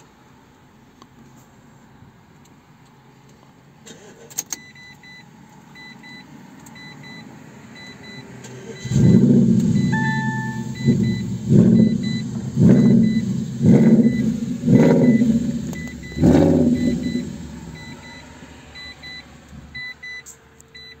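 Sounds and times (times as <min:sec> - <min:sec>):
synthetic engine revving: 0:08.8 - 0:19.4
short high beeps: 0:09.8 - 0:12.2, 0:14.8 - 0:18.2.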